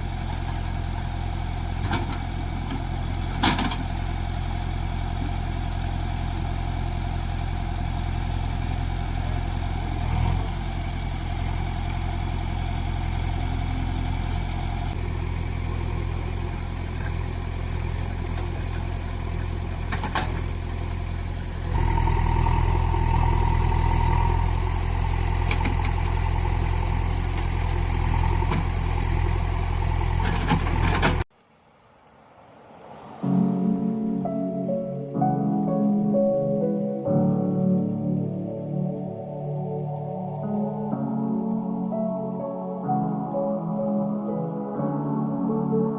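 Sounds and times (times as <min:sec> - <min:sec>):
vehicle engine running: 0:00.0 - 0:31.3.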